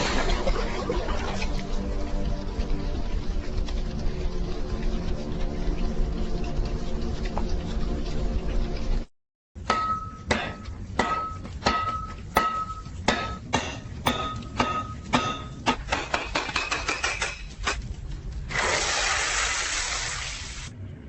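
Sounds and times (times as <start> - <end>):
hammer striking steel on anvil: 9.6 - 17.4.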